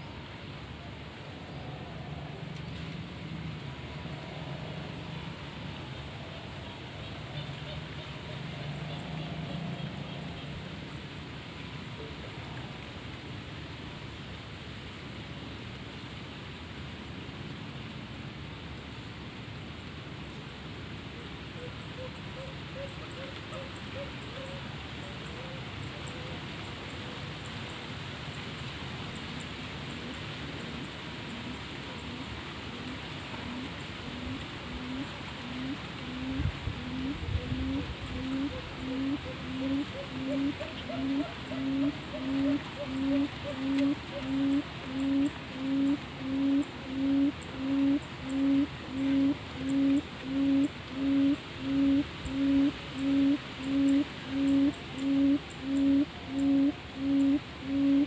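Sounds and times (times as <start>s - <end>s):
wind: 0.0s - 58.0s
quail hooting calls: 33.4s - 58.0s.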